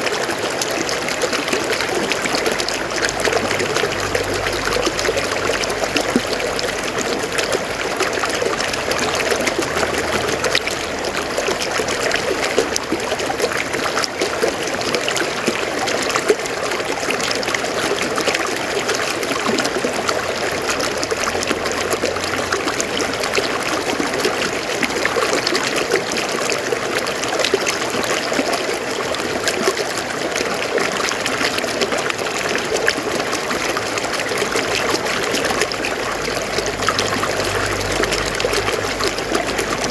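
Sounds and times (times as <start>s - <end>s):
river flowing over rocks: 0.0s - 39.9s.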